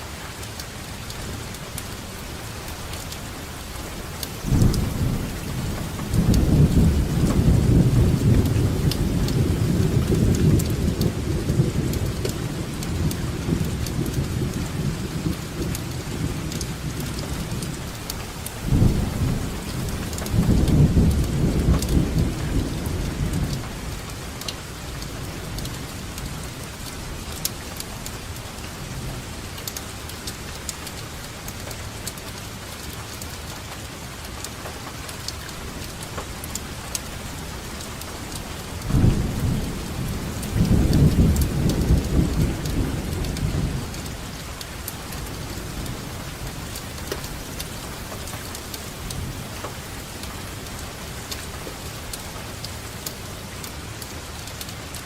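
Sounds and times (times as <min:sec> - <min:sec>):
rain pattering: 0:00.0 - 0:55.0
rolling thunder: 0:04.4 - 0:18.0, 0:18.6 - 0:24.0, 0:38.8 - 0:44.4.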